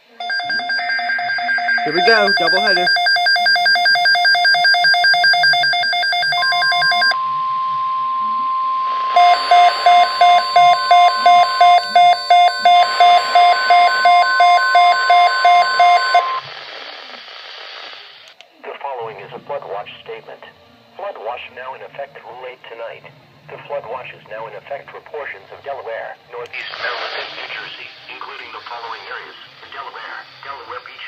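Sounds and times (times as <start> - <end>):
steady single-pitch alert tone: 0.2 - 16.4
radio alarm beeping: 0.2 - 16.5.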